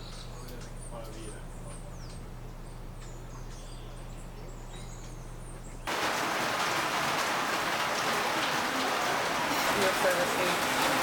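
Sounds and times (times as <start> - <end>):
small birds chirping: 0.0 - 11.0
rush of falling water: 5.9 - 11.0.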